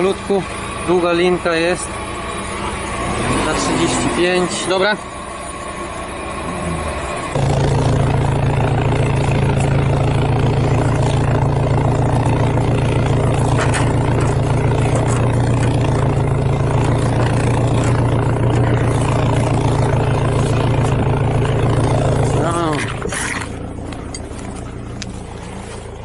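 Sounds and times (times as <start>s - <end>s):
winch motor humming: 0.0s - 26.0s.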